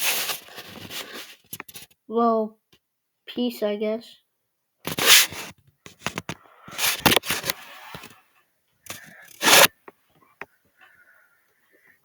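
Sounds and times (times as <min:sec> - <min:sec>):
scraping and rustling handling: 0:00.0 - 0:02.0.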